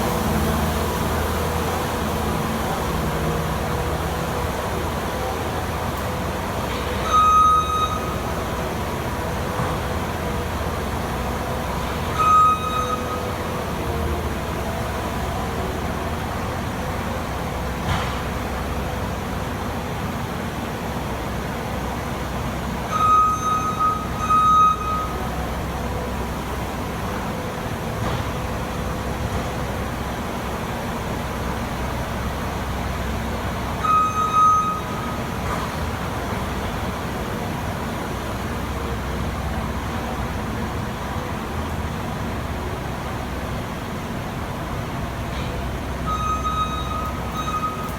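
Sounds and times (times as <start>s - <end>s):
diesel engine running: 0.0s - 47.9s
reversing alarm beeping: 6.9s - 9.2s, 11.8s - 14.0s, 22.8s - 25.8s, 33.7s - 35.5s, 45.9s - 47.9s.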